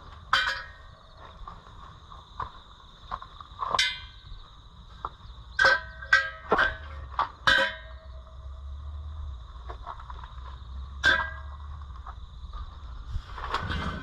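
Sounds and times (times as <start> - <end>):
metal clanking: 0.2 - 1.1, 5.6 - 8.2, 11.0 - 11.7, 13.4 - 14.0.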